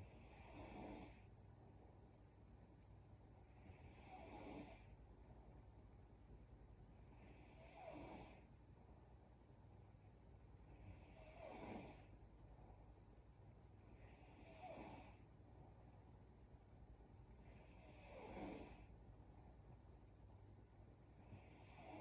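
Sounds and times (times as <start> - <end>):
woman snoring faintly: 0.0 - 1.3, 3.6 - 4.9, 7.2 - 8.5, 10.8 - 12.1, 17.5 - 18.9, 21.2 - 22.0.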